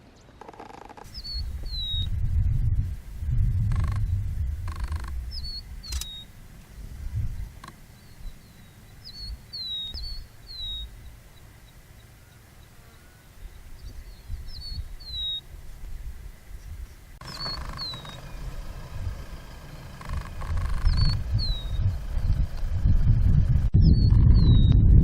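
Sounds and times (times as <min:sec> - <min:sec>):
bird calling: 0:00.0 - 0:02.2, 0:03.6 - 0:22.6
low rumble: 0:01.1 - 0:11.3, 0:16.0 - 0:25.0.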